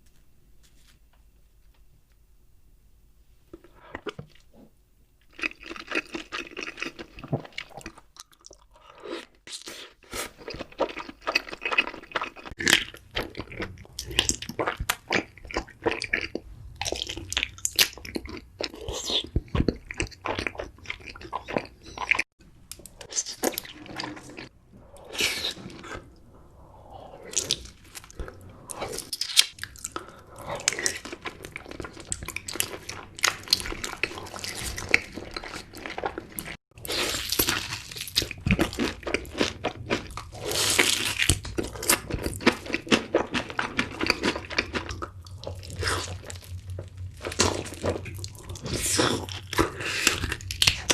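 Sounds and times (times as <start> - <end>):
crunchy food chewing: 5.3 - 22.3.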